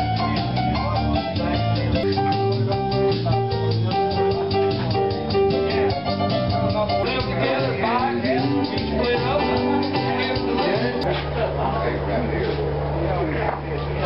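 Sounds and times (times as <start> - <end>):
music with guitar and drums: 0.0 - 11.1.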